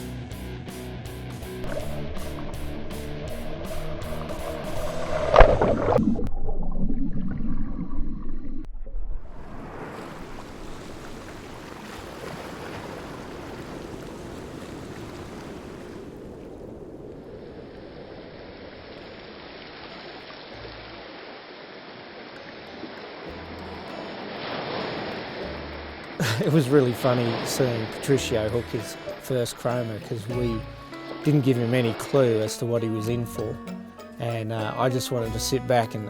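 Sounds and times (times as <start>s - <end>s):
lake waves washing onto shore: 1.6s - 6.0s, 9.3s - 33.0s.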